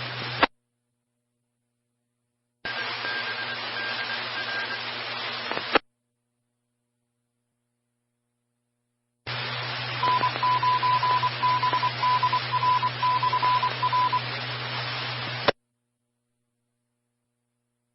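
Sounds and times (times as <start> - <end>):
radio static hiss: 0.0 - 0.5, 2.6 - 5.8, 9.3 - 15.6
morse code beeps: 10.0 - 14.2.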